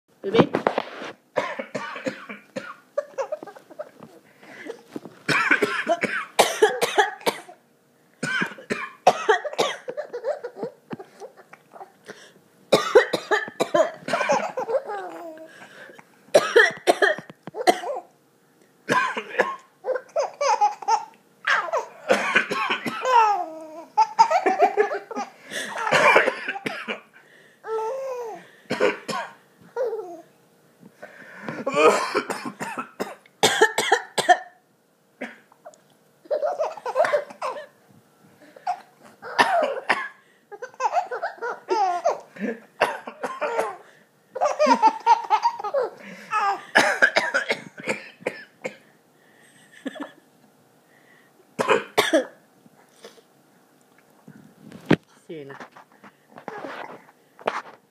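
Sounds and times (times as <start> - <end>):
baby laughing: 3.0 - 4.2, 9.9 - 12.0, 14.2 - 15.5, 19.8 - 22.0, 23.0 - 26.0, 35.6 - 37.7, 40.5 - 42.3, 44.4 - 46.6
man coughing: 4.6 - 7.6, 8.2 - 10.4, 12.7 - 15.0, 16.4 - 18.0, 18.9 - 19.7, 22.0 - 23.3, 24.2 - 27.1, 28.7 - 29.4, 31.6 - 34.6, 38.6 - 40.2, 42.0 - 43.8, 45.7 - 48.8, 51.6 - 52.4.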